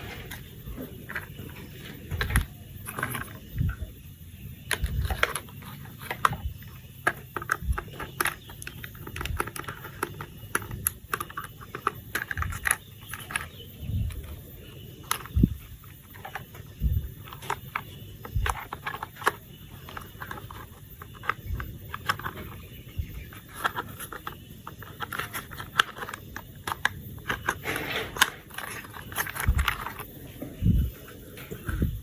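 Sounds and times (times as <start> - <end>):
plastic toy parts clicking: 2.1 - 3.4, 4.7 - 14.3, 15.0 - 22.6, 23.3 - 30.1.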